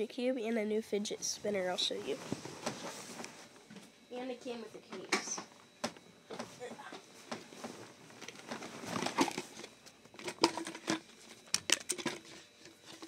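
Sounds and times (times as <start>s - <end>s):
plastic toys clicking and knocking: 9.2s - 12.2s.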